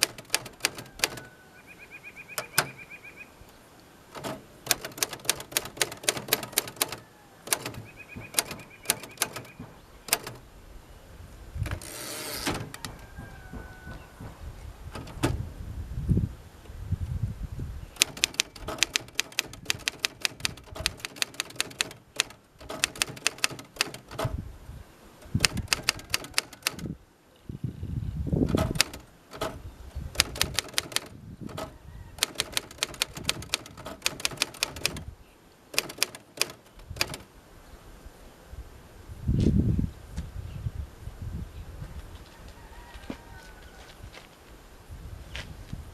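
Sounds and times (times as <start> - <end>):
manual typewriter key strikes: 0.0 - 1.3, 2.4 - 2.8, 4.2 - 10.4, 18.0 - 24.4, 25.3 - 26.9, 28.4 - 35.1, 35.7 - 37.2
deeper thuds: 11.6 - 16.2.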